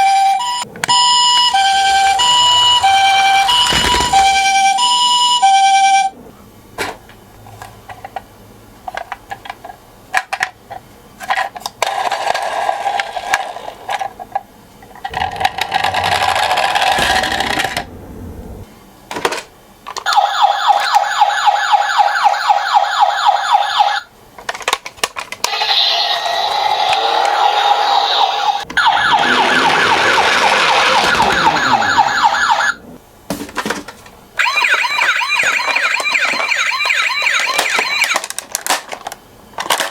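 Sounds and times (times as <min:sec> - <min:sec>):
toy ambulance electronic siren: 0:00.0 - 0:06.1, 0:20.0 - 0:24.1, 0:25.5 - 0:32.8, 0:34.4 - 0:38.4.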